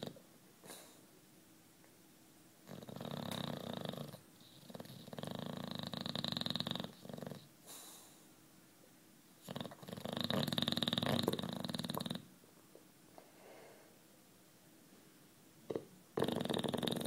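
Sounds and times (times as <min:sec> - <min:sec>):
dog snoring: 0:00.0 - 0:01.0, 0:02.6 - 0:08.1, 0:09.4 - 0:12.3, 0:15.7 - 0:17.0.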